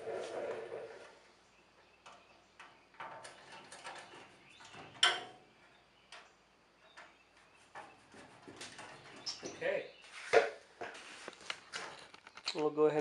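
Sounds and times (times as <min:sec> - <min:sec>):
metal hardware clicking and rattling: 0:02.0 - 0:09.6, 0:11.4 - 0:13.0.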